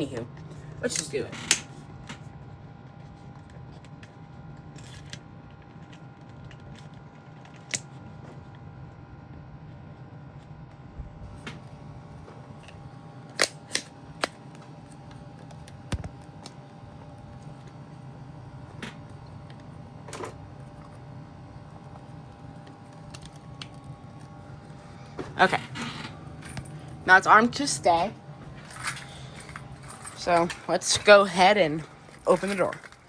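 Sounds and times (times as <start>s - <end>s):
steady electrical hum: 0.0s - 33.0s.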